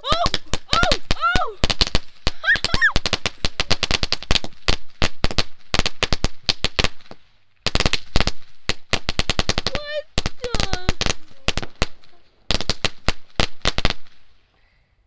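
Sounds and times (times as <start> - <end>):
firecrackers banging: 0.0 - 14.5.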